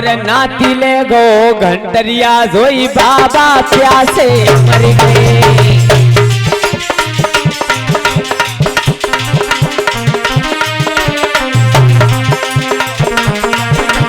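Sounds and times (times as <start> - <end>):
hand drum strokes: 3.0 - 14.0
sustained melody line: 4.3 - 14.0.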